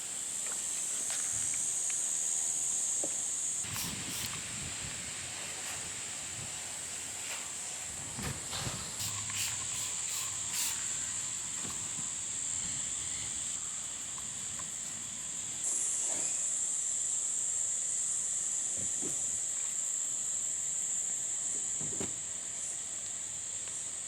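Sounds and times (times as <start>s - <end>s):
insects droning: 0.0s - 24.0s.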